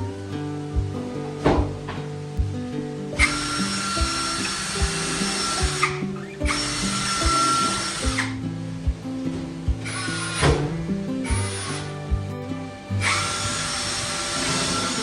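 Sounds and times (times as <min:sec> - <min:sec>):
background music with steady beat: 0:00.0 - 0:15.0
power tool whining: 0:12.9 - 0:15.0.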